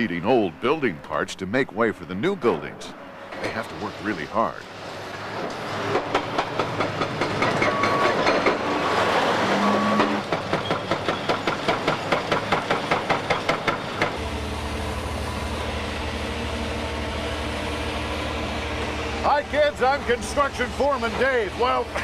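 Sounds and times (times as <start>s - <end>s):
large engine humming: 0.0s - 22.0s.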